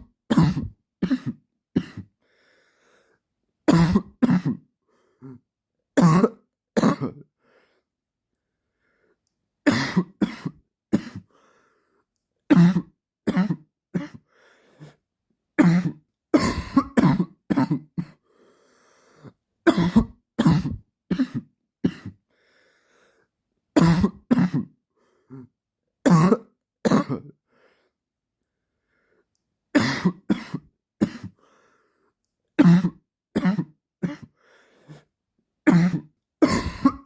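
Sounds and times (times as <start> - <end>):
man coughing: 0.3 - 2.1, 3.7 - 4.7, 9.7 - 11.3, 15.6 - 18.2, 19.7 - 22.2, 23.8 - 24.8, 29.8 - 31.4, 35.7 - 37.0
faint breaths: 2.2 - 3.3, 11.3 - 12.2, 14.2 - 15.1, 18.1 - 19.4, 22.3 - 23.4, 31.4 - 32.2, 34.3 - 35.2.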